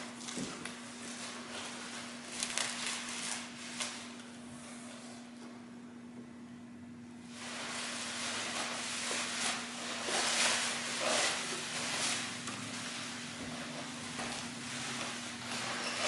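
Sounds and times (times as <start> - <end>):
packing material rustling: 0.0 - 4.2, 7.3 - 16.0.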